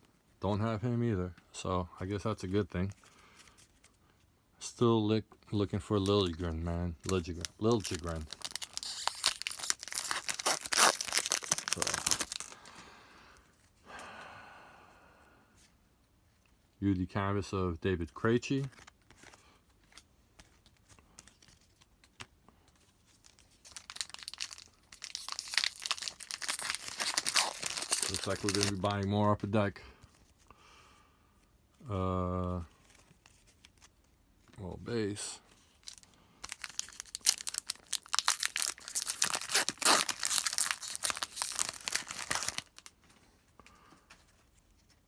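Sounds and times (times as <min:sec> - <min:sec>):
foil wrapper crinkling and tearing: 0:05.8 - 0:12.8, 0:18.5 - 0:29.1, 0:35.6 - 0:43.0.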